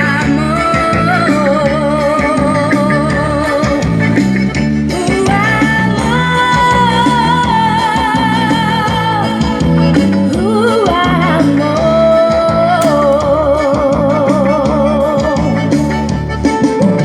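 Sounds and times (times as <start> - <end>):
drums: 0.2 - 14.3
plucked guitar: 8.8 - 14.3.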